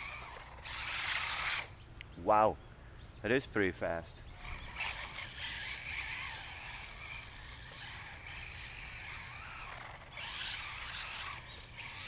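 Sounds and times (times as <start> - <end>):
small electric motor whining: 0.0 - 1.9, 4.2 - 12.0
small tyres hissing on pavement: 4.8 - 12.0.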